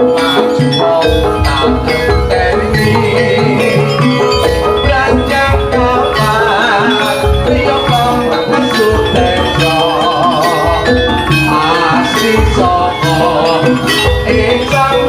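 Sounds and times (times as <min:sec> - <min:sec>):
metal keyed percussion and drums: 0:00.0 - 0:15.0
wavering lead melody: 0:00.0 - 0:15.0
heavy bass beat: 0:00.8 - 0:10.0.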